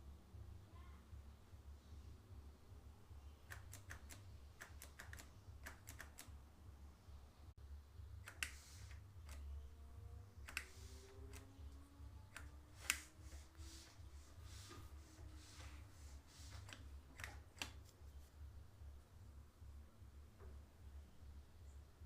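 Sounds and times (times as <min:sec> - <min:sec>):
faint low hum: 0:00.0 - 0:22.0
bicycle mechanism clicking: 0:10.4 - 0:11.6.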